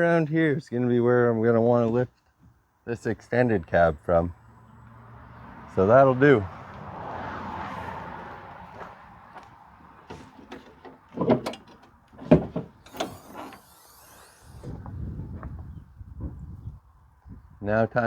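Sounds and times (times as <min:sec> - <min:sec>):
knocks and clunks of handling: 0:10.0 - 0:13.6.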